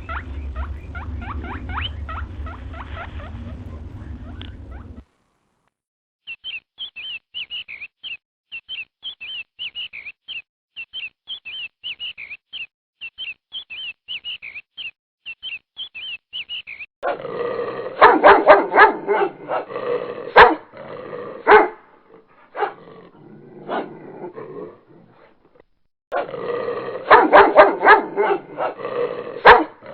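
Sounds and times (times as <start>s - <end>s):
dog barking loudly: 18.0s - 19.7s, 20.3s - 20.7s, 21.4s - 21.9s, 22.5s - 22.8s, 27.0s - 28.8s, 29.4s - 29.8s.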